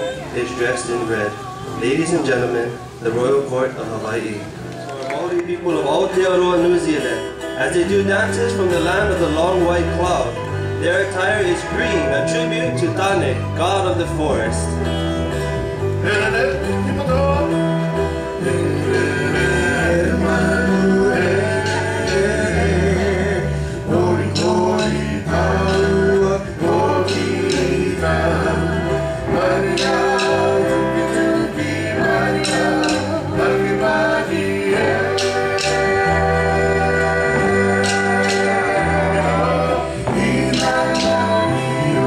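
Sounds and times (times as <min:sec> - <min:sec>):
voices singing: 0:00.0 - 0:04.9, 0:05.5 - 0:42.0
guitar: 0:00.0 - 0:42.0
stepping bass line: 0:12.9 - 0:42.0.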